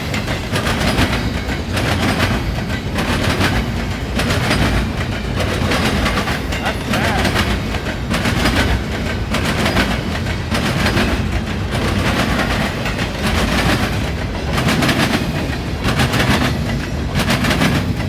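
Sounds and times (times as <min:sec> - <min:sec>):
train rolling rumble: 0:00.0 - 0:18.0
train wheels banging over crossing: 0:00.0 - 0:18.0.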